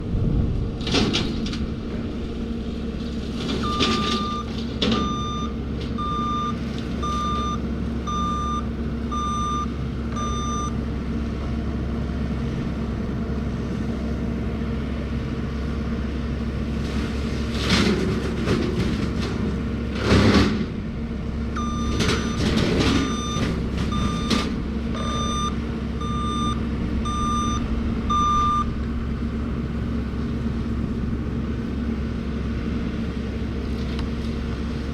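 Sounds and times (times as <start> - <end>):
skid steer with tree shredder running: 0.0 - 34.9
high warning beeps: 3.6 - 10.8, 21.6 - 28.7.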